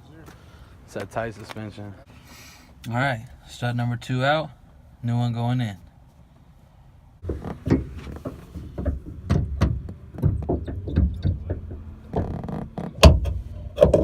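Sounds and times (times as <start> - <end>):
metal knocks and clanks: 7.2 - 14.0.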